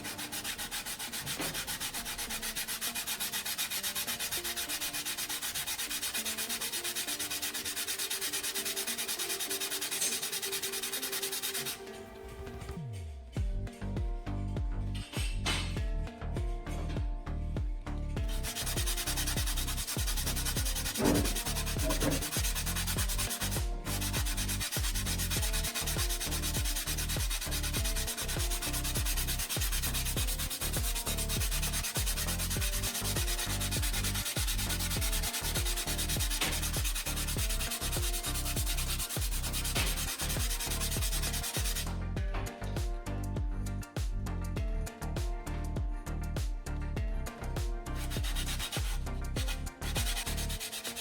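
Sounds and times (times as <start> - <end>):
background music with bass line: 12.2 - 51.0
abrasive grinding noise: 18.3 - 42.0.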